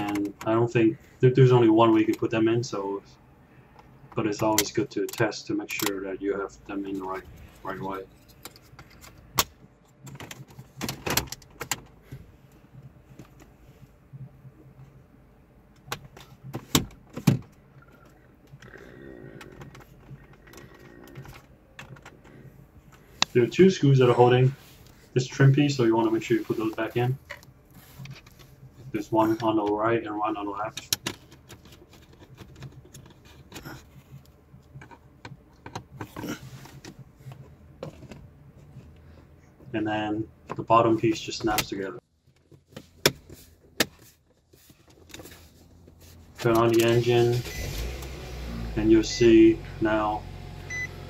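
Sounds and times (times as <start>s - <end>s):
soft rustle: 42.2s - 46.5s.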